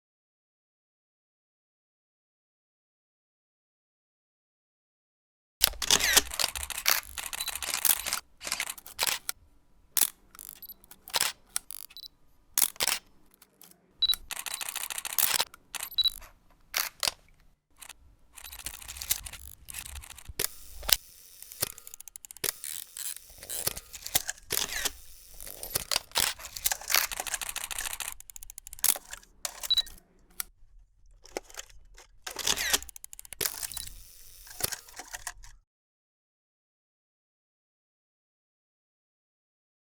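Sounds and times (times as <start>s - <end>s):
mechanical clicking and clattering: 5.6s - 30.5s, 31.1s - 35.5s.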